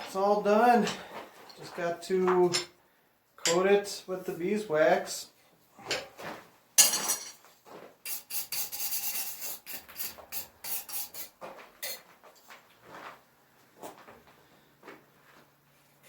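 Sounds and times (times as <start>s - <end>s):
scraping strokes on steel: 8.0s - 12.0s.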